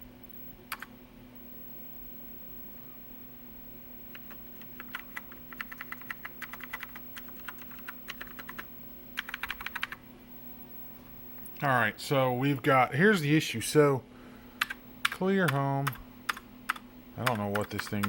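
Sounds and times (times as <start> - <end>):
steady low hum: 0.0 - 18.0
keyboard key clicks: 14.6 - 18.0.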